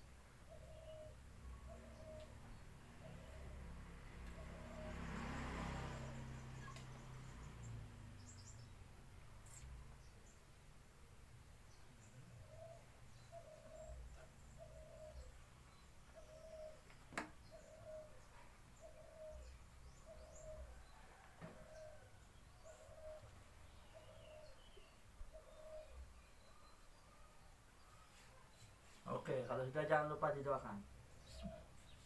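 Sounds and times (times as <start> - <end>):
faint high bird chirps: 0.4 - 3.6, 12.5 - 29.0, 31.2 - 32.0.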